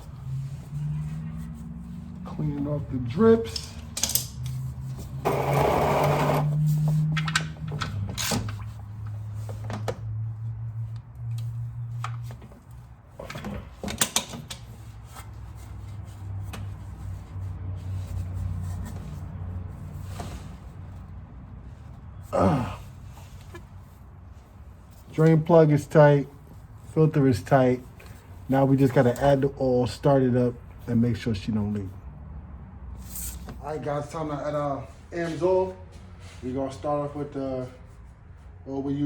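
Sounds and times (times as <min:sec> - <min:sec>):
hand tools clicking and knocking: 0:03.4 - 0:04.6.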